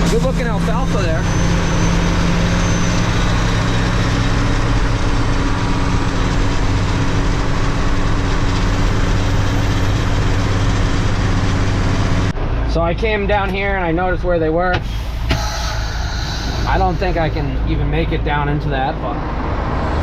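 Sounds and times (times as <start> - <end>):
diesel truck engine humming: 0.0 - 20.0
steady rushing noise: 2.2 - 20.0.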